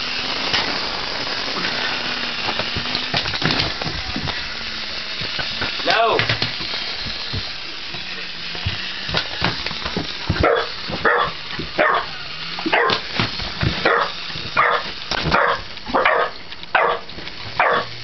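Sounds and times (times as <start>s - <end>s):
dog barking excitedly: 10.3s - 13.0s, 13.8s - 17.9s.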